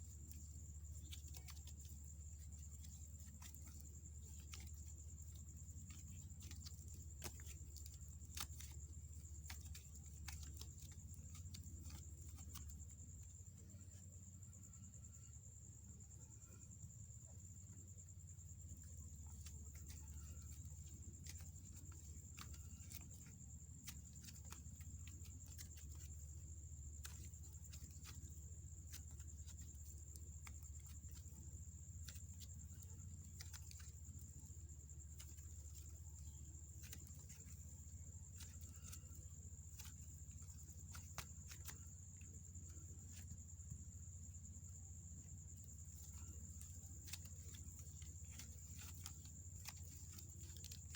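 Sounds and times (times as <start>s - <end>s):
clicks and crackles of slime: 0.0s - 14.8s, 15.5s - 50.9s
steady low hum: 0.0s - 50.9s.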